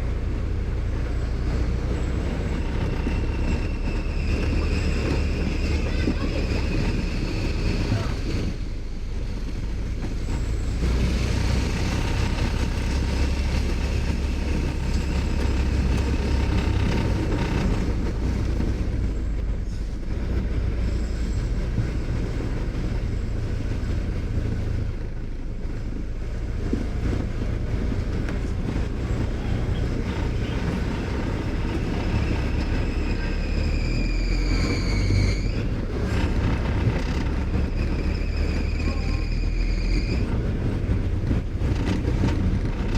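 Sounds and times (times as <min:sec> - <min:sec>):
vehicle rumbling: 0:00.0 - 0:42.9
thin high squeal: 0:32.2 - 0:35.8, 0:37.8 - 0:40.4.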